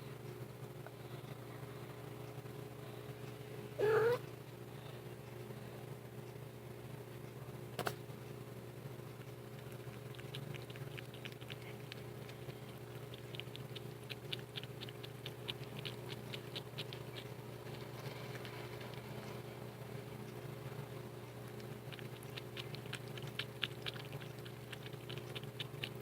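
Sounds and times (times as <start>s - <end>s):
cat making light ticking sounds: 3.8s - 4.3s
sharp click: 7.8s - 8.0s.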